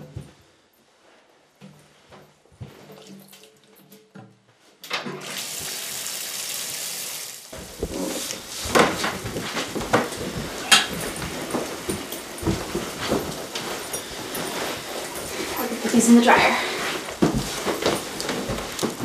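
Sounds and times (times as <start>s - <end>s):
water running from tap: 5.2s - 8.4s.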